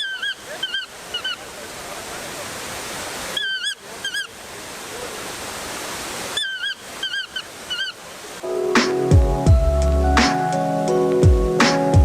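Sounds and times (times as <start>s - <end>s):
chirping bird calls: 0.0s - 1.5s, 3.3s - 4.4s, 6.4s - 8.0s
waterfall rushing: 0.0s - 12.0s.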